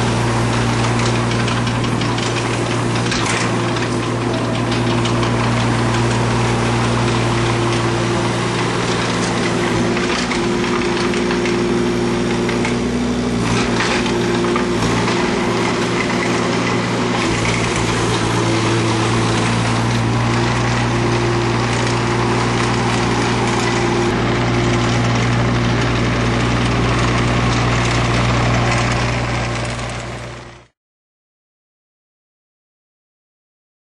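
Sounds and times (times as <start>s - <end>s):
mini excavator diesel engine: 0.0s - 30.8s.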